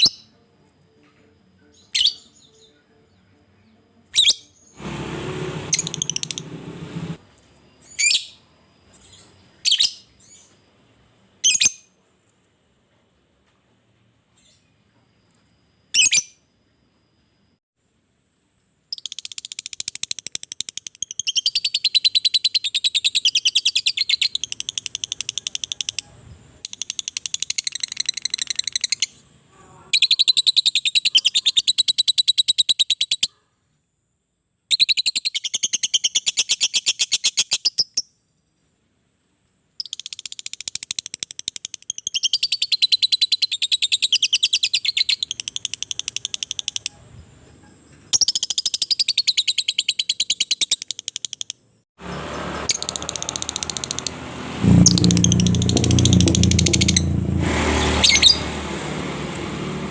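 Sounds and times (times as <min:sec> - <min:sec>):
lovebird chattering call: 0:54.8 - 0:57.1.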